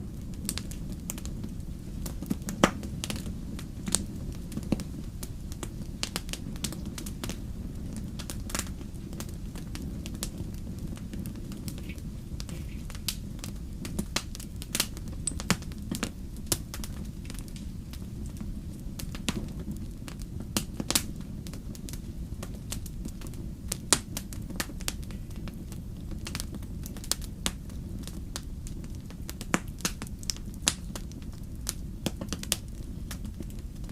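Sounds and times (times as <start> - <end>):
wood fire crackling: 0.0 - 33.9.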